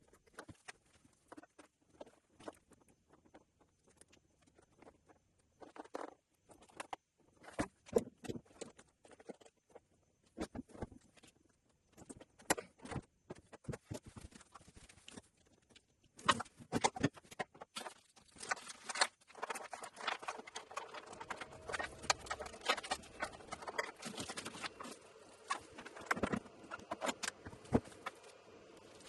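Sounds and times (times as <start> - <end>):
hands clicking on plastic parts: 12.0 - 29.0.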